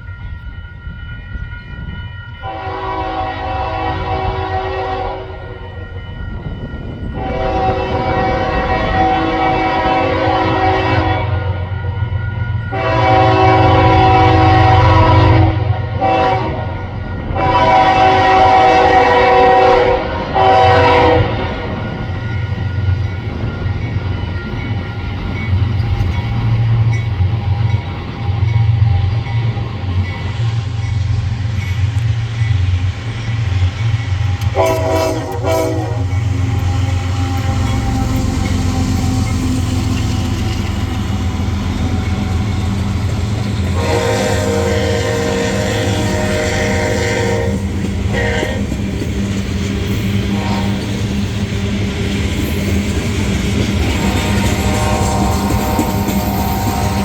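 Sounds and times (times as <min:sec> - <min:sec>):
passing train rumble: 0:00.0 - 0:57.0
locomotive air horn: 0:02.4 - 0:05.7, 0:07.2 - 0:11.9, 0:12.7 - 0:21.8, 0:34.4 - 0:39.2, 0:43.6 - 0:48.8, 0:50.2 - 0:50.9, 0:53.8 - 0:57.0.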